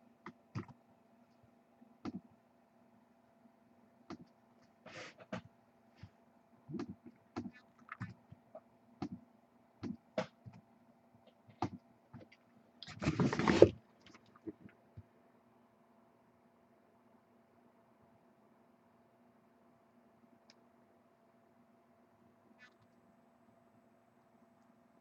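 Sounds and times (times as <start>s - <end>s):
faint steady hum: 0.0s - 25.0s
rustling and scraping of packs: 13.0s - 13.8s.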